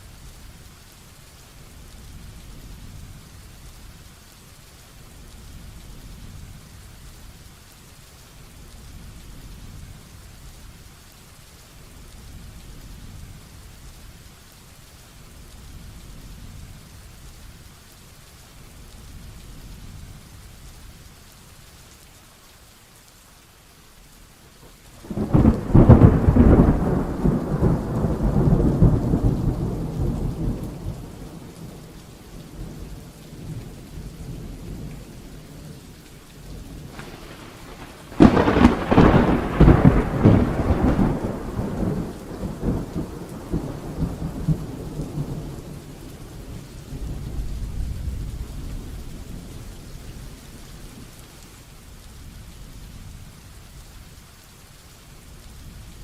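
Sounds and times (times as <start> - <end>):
heavy rain falling: 0.0 - 56.0
thunder claps rumbling: 25.0 - 35.8, 36.5 - 50.0.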